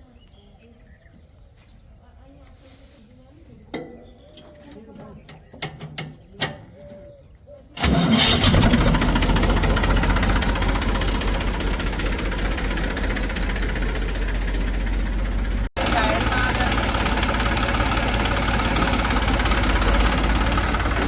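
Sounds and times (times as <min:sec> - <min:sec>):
diesel engine running: 0:07.8 - 0:21.0.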